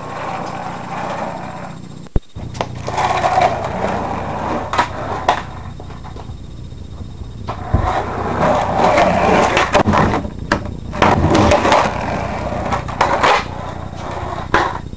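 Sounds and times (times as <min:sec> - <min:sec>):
skateboard wheels rolling: 0:00.0 - 0:06.4, 0:07.5 - 0:14.9
skateboard clacking on floor: 0:02.5 - 0:06.3, 0:07.5 - 0:14.9.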